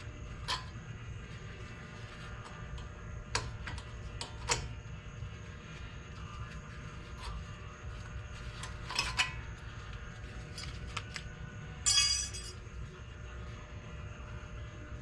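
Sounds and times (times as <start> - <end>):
metallic clatter: 11.8 - 12.7.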